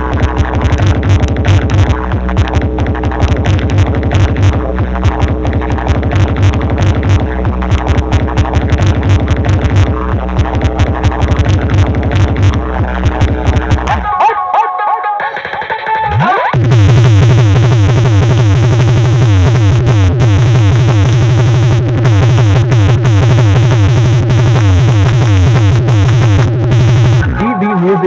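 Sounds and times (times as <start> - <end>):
deep bass beat: 0.0 - 14.2, 16.1 - 28.0
loud electronic dance music: 0.0 - 28.0
falling synth stabs: 16.1 - 28.0.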